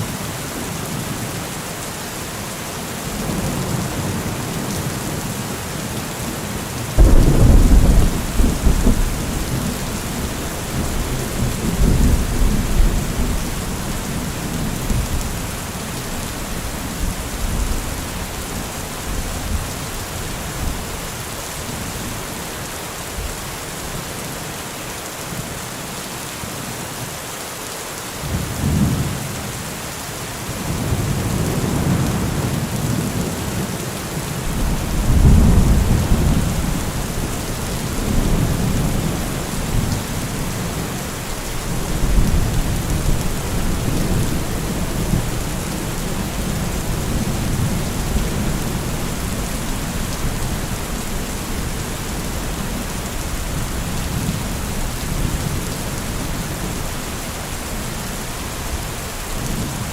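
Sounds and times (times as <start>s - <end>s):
heavy rain: 0.0s - 59.9s
deep low thunder rumbles: 7.0s - 13.6s, 34.5s - 41.0s.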